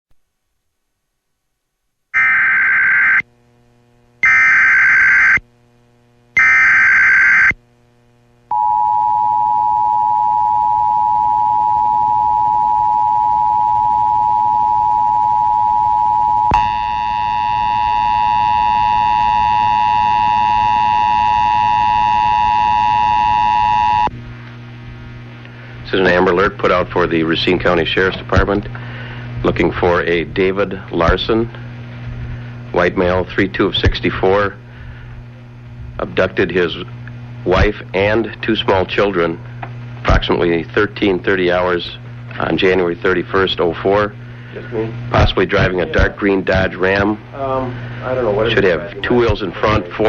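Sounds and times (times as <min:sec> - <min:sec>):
header data bursts: 0:04.2 - 0:05.4, 0:06.4 - 0:07.6, 0:08.5 - 0:24.1
low hum: 0:07.5 - 0:50.0
two-tone attention signal: 0:08.5 - 0:24.1.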